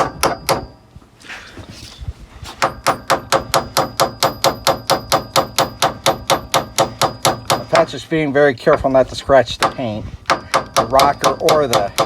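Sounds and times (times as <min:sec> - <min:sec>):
hammer tapping on metal tool: 0:02.6 - 0:07.9, 0:09.6 - 0:12.0.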